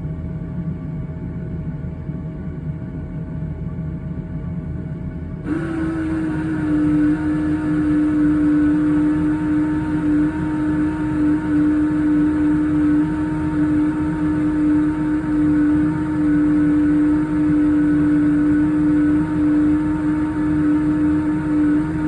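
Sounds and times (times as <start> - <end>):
washer-dryer humming drone: 4.6 - 22.0.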